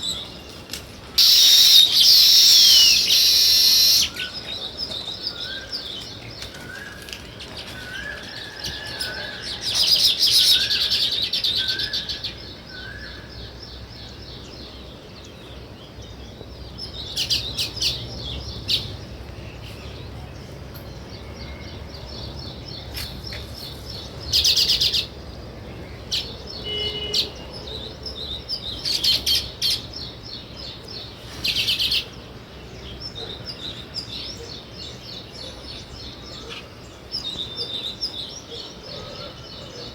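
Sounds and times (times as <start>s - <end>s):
sparrows chirping: 0.0s - 39.9s
rapid chattering chirps: 1.2s - 4.1s.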